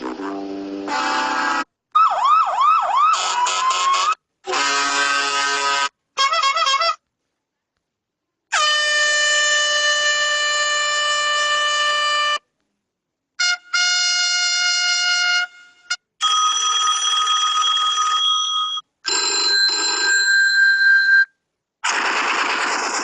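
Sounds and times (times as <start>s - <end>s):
brassy trumpet-like ringtones: 0.0s - 1.7s, 3.0s - 7.0s, 8.5s - 12.4s, 13.4s - 16.3s.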